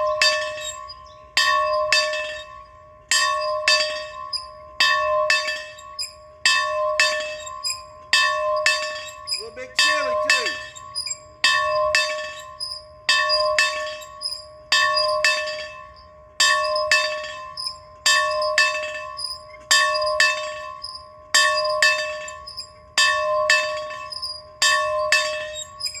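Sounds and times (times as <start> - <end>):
bell ringing: 9.4 - 10.8.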